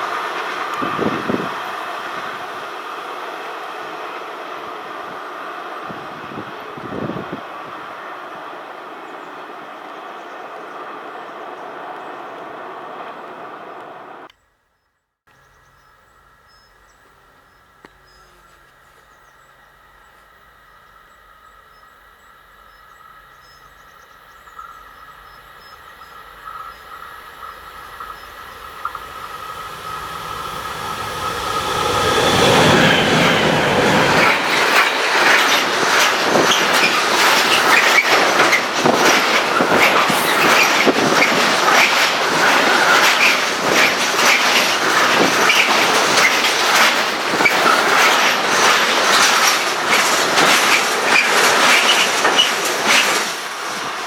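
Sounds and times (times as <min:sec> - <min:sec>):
wheels clattering over rails: 0:00.0 - 0:14.3, 0:26.0 - 0:54.0
train passing: 0:00.0 - 0:14.4, 0:15.4 - 0:54.0.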